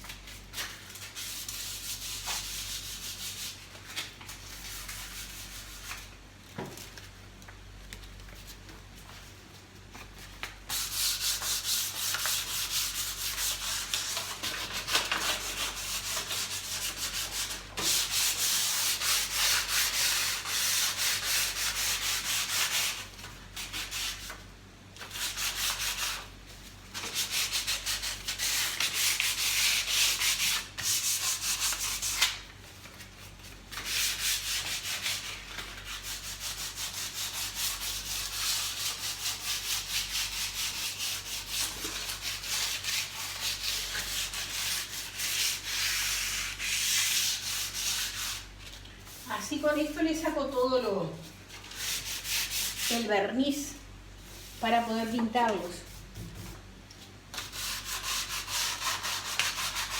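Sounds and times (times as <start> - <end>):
sandpaper rubbing varnished surface: 10.7 - 24.3, 27.0 - 32.4, 33.2 - 48.5, 51.6 - 53.1, 55.7 - 56.6, 57.4 - 59.9.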